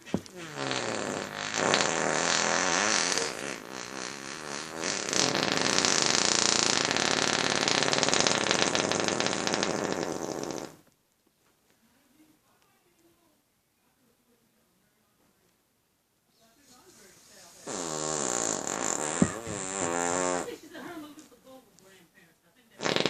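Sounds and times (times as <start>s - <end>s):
buzzy fart noise: 0.0s - 10.9s, 17.2s - 20.6s, 22.8s - 23.0s.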